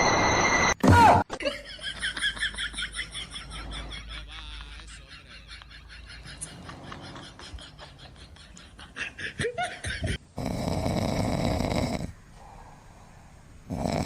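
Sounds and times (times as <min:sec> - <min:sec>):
short rising squeal: 0:00.0 - 0:00.8
pet snoring: 0:10.4 - 0:12.6, 0:13.6 - 0:14.0.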